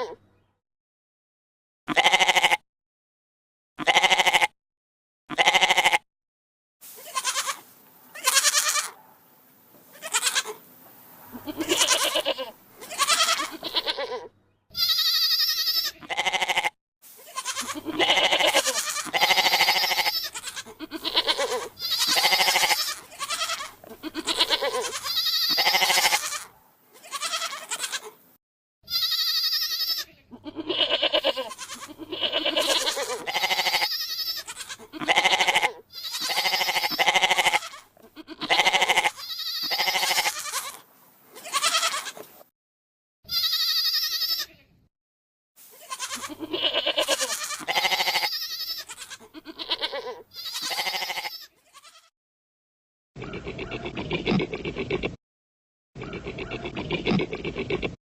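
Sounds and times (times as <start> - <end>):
goats bleating: 1.9 - 2.6, 3.8 - 4.5, 5.3 - 6.0, 7.0 - 9.0, 9.9 - 10.6, 11.3 - 28.2, 28.9 - 42.3, 43.3 - 44.6, 45.7 - 52.1.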